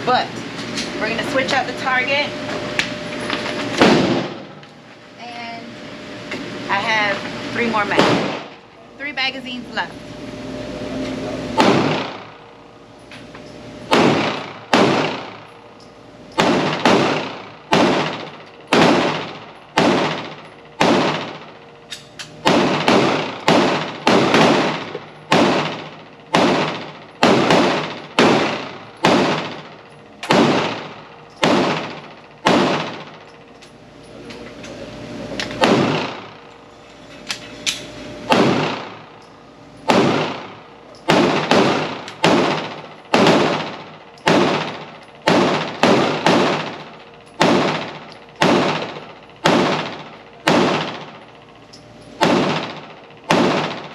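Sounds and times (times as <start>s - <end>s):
pistol shots with ringing tail: 3.8s - 4.6s, 7.9s - 8.5s, 11.6s - 12.5s, 13.9s - 15.7s, 16.3s - 21.8s, 22.4s - 33.3s, 35.6s - 36.5s, 38.3s - 39.2s, 39.8s - 51.2s, 52.1s - 53.9s.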